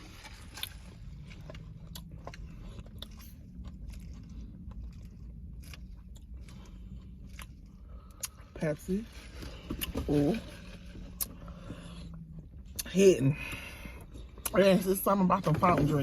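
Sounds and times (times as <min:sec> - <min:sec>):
small crunches: 0:00.0 - 0:08.4
person chewing food: 0:00.0 - 0:14.6.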